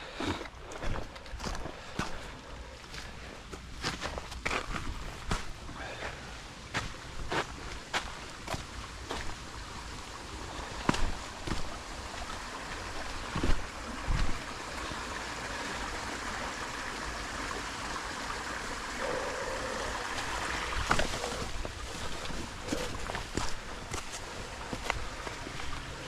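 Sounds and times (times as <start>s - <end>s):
creek water running: 0.0s - 26.0s
footsteps: 13.3s - 14.5s, 20.1s - 25.9s.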